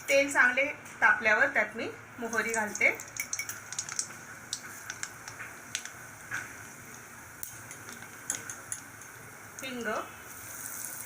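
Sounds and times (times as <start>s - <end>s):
oil sizzling: 0.0s - 11.0s
mustard seeds popping in oil: 2.3s - 9.9s.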